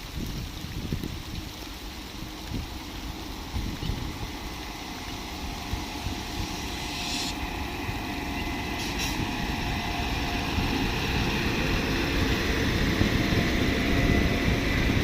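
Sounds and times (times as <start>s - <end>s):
train rumbling: 1.2s - 15.0s.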